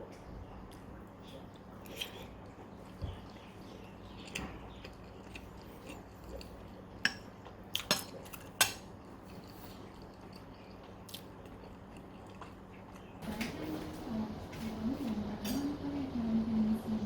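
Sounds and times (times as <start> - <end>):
faint steady hum: 0.0 - 17.0
utensils and dishes clinking: 13.2 - 16.4.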